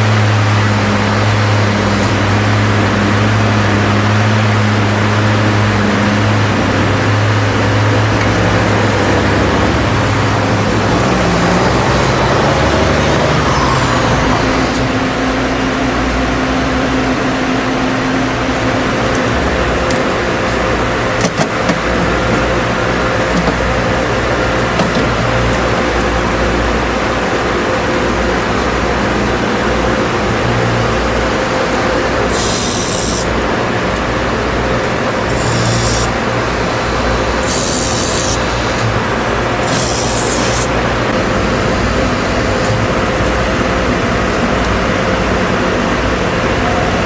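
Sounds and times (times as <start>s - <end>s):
vehicle running noise: 0.0s - 47.0s.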